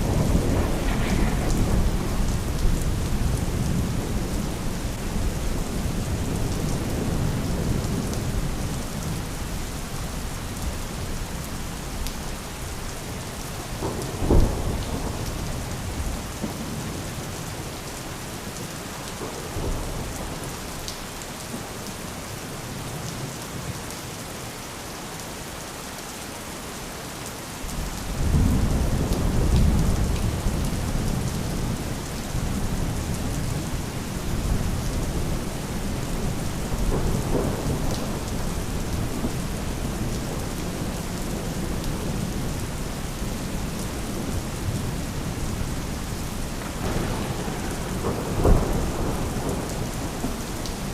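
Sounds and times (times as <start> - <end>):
thunder rumbling: 0.0 - 8.6, 28.1 - 50.9
steady rain: 0.0 - 50.9.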